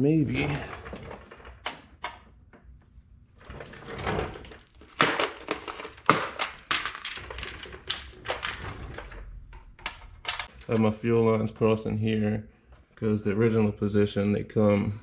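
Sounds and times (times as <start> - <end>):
hard objects knocking and clunking: 3.4 - 10.8.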